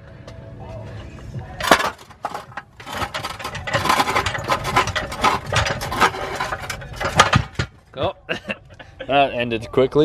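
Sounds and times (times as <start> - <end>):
metal clanking and rattling: 1.6 - 7.9.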